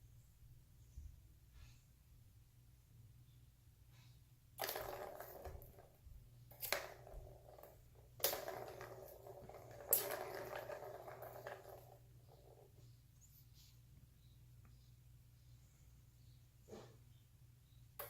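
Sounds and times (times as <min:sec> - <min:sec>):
toy balls rolling on plastic tracks: 0:04.6 - 0:12.9.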